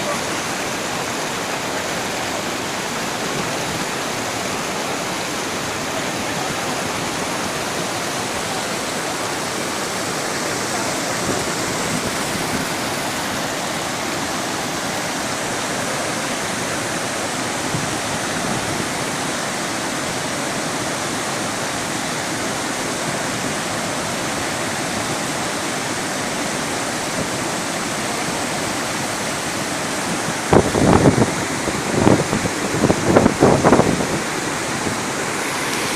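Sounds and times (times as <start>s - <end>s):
waterfall pouring and crashing: 0.0s - 35.9s
wind buffeting microphone: 30.3s - 35.1s.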